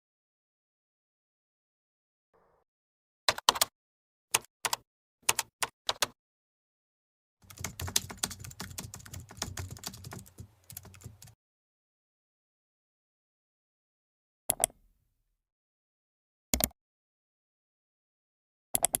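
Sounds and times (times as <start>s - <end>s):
keyboard typing: 3.3s - 3.7s, 4.3s - 6.2s, 7.4s - 11.4s, 18.8s - 19.0s.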